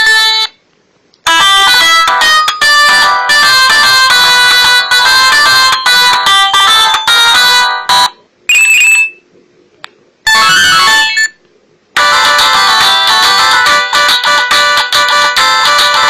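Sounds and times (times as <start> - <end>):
polyphonic phone ringtones: 0.0 - 0.6, 1.3 - 9.2, 10.3 - 11.4, 12.0 - 16.0
short high tone: 8.5 - 9.2.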